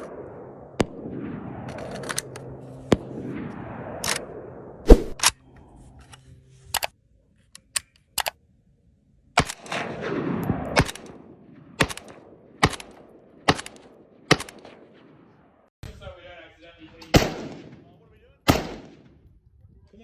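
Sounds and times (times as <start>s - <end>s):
gunshot echo: 0.0s - 5.3s, 17.0s - 19.2s
rifle shots: 0.0s - 5.4s, 9.4s - 15.4s, 17.0s - 19.2s.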